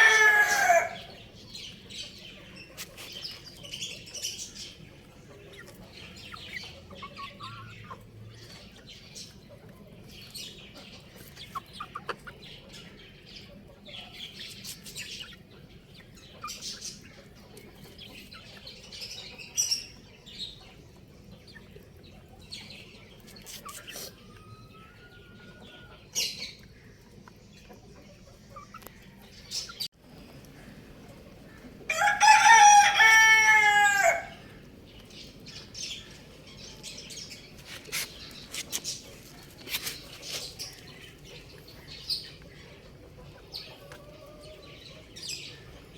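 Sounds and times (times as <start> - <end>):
rooster crowing: 0.0 - 1.1, 31.9 - 34.4
chicks peeping: 0.0 - 45.9.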